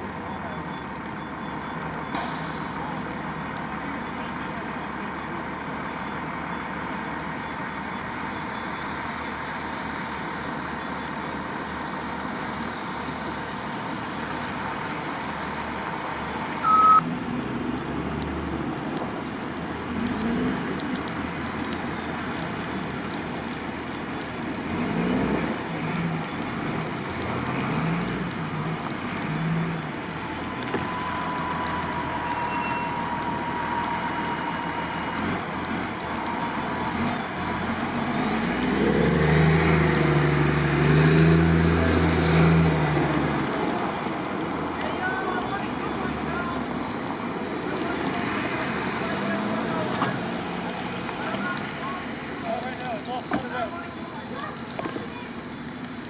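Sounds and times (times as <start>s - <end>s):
fire vehicles running: 0.0s - 56.0s
traffic: 0.0s - 56.0s
short loud beep: 16.6s - 17.0s.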